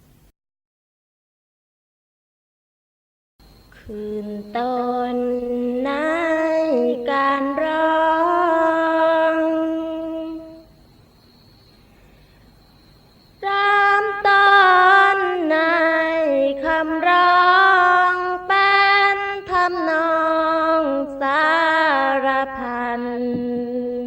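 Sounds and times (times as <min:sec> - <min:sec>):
women chanting: 0:03.9 - 0:10.7, 0:13.4 - 0:21.1.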